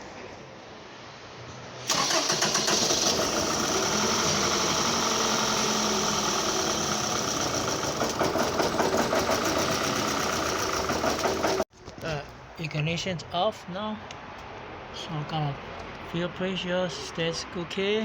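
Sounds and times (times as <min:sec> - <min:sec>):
car engine starting and idling: 0:01.8 - 0:11.7.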